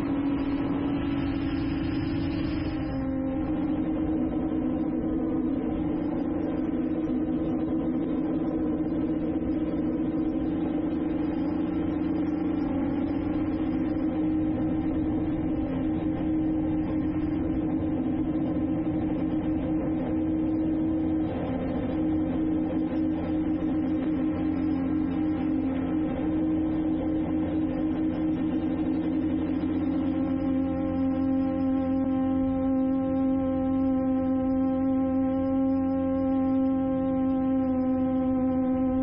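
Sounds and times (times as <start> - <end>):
drone propellers humming: 0.0 - 39.0.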